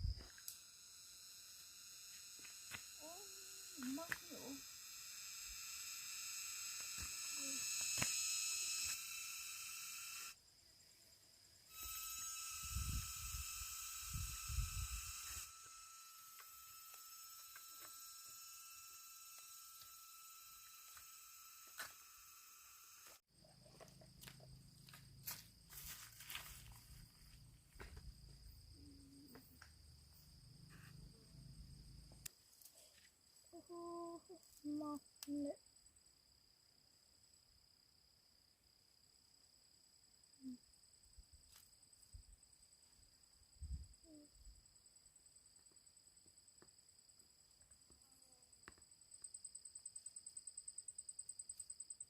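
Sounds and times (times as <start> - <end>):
high-pitched insect trill: 0.0 - 52.0
high-pitched insect shrilling: 0.2 - 10.4, 11.7 - 23.2.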